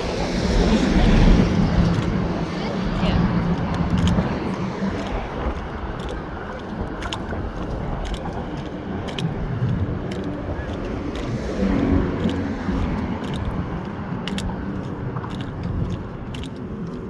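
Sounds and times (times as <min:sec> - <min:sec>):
highway traffic rushing: 0:00.0 - 0:17.0
light ticks: 0:05.0 - 0:17.0.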